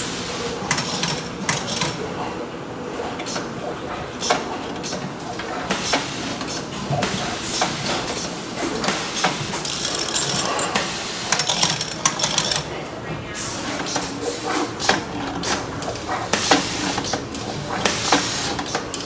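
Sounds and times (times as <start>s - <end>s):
cans and machinery clinking: 0.0s - 2.1s, 4.2s - 12.8s.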